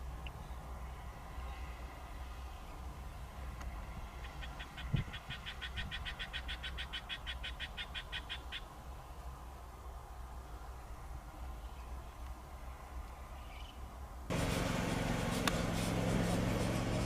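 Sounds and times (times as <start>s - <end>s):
frog calling: 4.2s - 8.7s.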